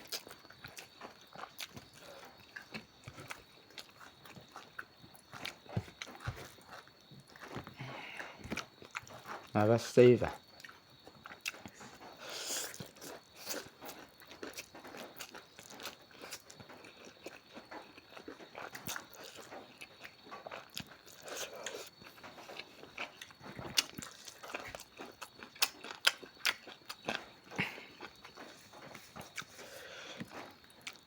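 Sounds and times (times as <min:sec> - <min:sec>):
chewing and crunching food: 0:00.0 - 0:31.0.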